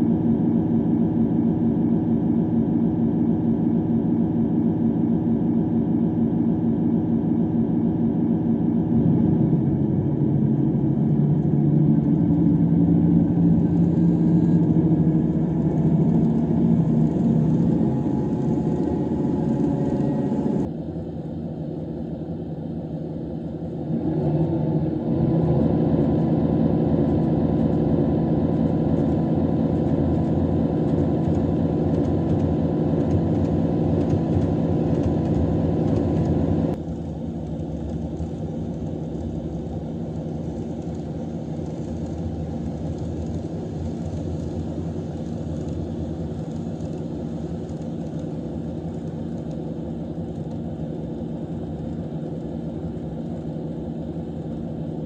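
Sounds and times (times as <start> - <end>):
diesel railcar engine running: 0.0 - 55.0.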